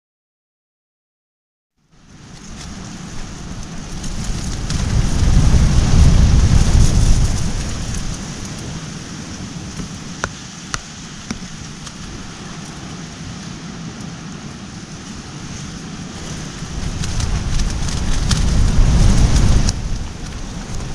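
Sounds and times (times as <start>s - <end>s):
strong wind on microphone: 2.0s - 20.9s.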